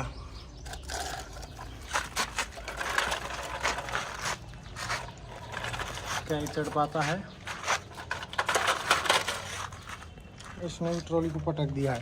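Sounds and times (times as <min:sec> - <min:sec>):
plastic toy tractor rattling: 0:00.7 - 0:10.0.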